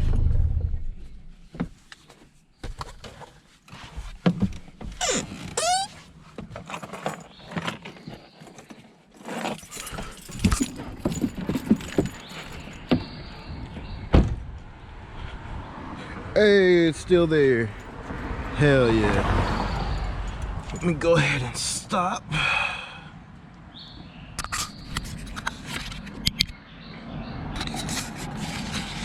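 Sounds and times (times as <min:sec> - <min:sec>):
short falling squeal: 0:05.0 - 0:06.0.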